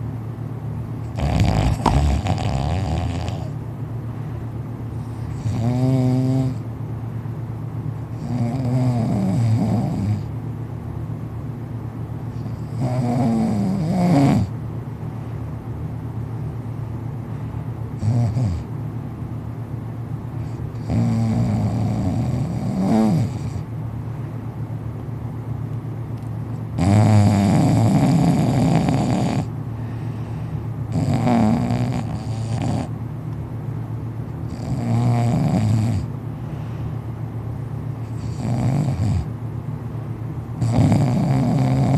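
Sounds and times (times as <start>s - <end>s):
steady low hum: 0.0s - 41.9s
man snoring: 1.1s - 3.5s, 5.3s - 6.6s, 8.2s - 10.3s, 12.6s - 14.5s, 18.0s - 18.6s, 20.8s - 23.6s, 26.8s - 29.5s, 30.9s - 32.9s, 34.5s - 36.1s, 38.1s - 39.3s, 40.6s - 41.9s.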